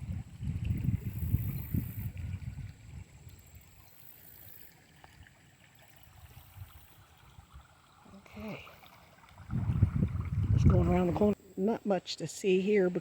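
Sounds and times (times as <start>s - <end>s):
low rumble on microphone: 0.0s - 3.2s, 9.4s - 11.4s
shallow creek flowing: 0.0s - 13.0s.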